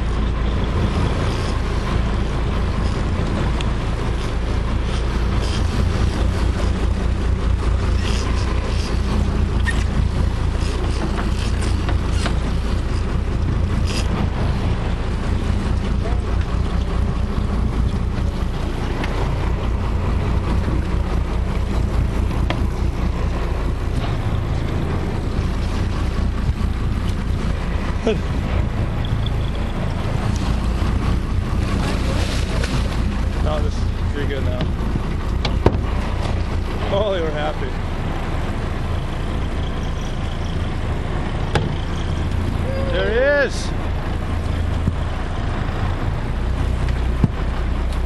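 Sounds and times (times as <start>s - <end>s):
boat engine rumbling: 0.0s - 48.0s.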